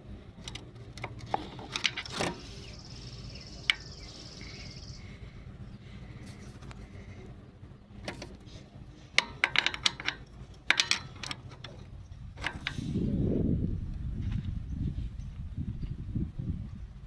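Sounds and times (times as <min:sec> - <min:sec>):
wrench clicking on metal: 0:09.2 - 0:11.7
low rumble: 0:11.9 - 0:17.0.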